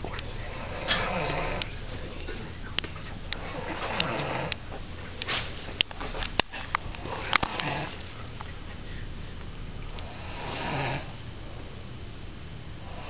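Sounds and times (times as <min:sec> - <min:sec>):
person snoring: 0:03.4 - 0:04.6, 0:07.0 - 0:08.0, 0:10.0 - 0:11.2.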